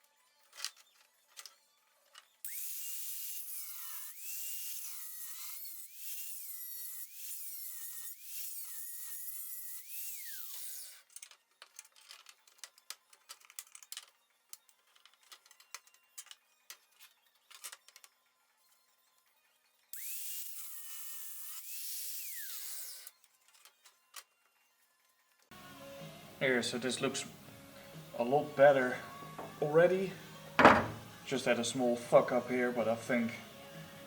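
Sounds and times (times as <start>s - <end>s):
rotary tool grinding plastic: 0.0s - 25.5s.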